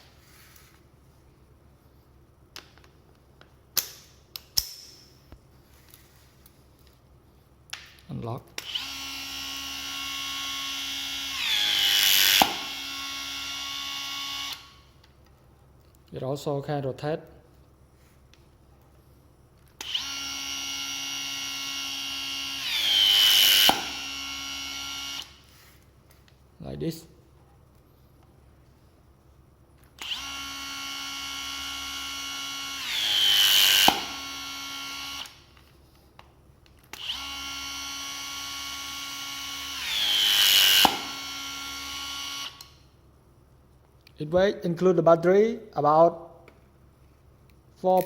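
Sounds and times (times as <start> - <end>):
sharp clicks and knocks of tool: 2.5 - 5.1
hydraulic crimper motor whining: 8.6 - 14.8, 19.8 - 25.4, 29.9 - 35.4, 36.9 - 42.8.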